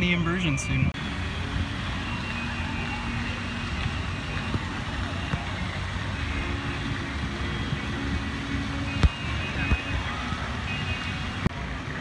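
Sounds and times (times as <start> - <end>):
outdoor background noise: 0.0 - 12.0
vehicle engine rumble: 0.0 - 12.0.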